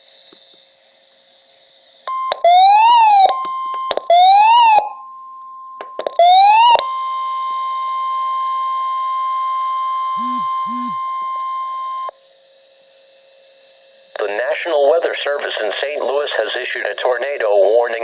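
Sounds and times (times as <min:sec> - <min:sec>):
data bursts: 0:10.2 - 0:11.1
steady attention tone: 0:10.2 - 0:11.1.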